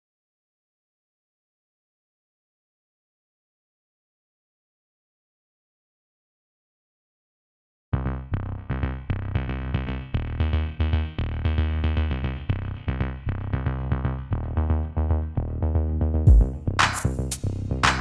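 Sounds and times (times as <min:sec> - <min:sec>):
electronic music: 0:16.3 - 0:18.0.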